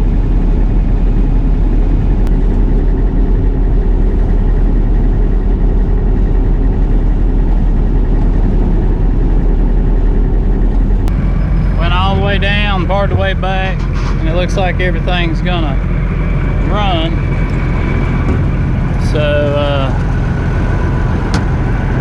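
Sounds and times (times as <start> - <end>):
combine harvester droning: 0.0 - 22.0.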